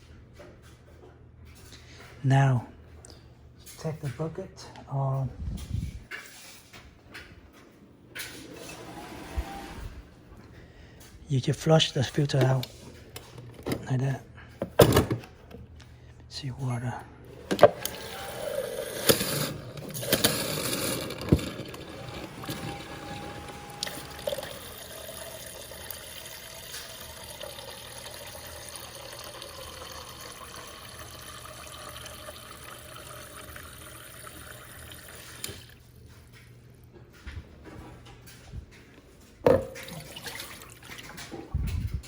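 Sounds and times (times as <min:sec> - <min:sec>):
water stream into a bucket: 0:17.4 - 0:35.8, 0:39.6 - 0:41.3.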